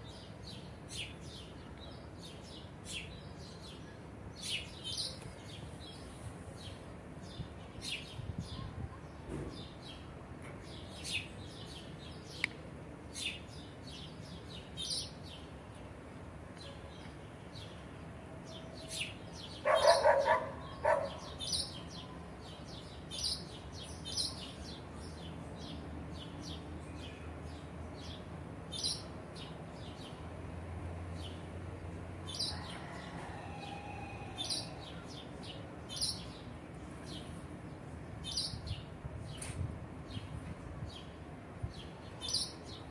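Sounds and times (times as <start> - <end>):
small birds chirping: 18.5 - 30.3, 34.3 - 42.9.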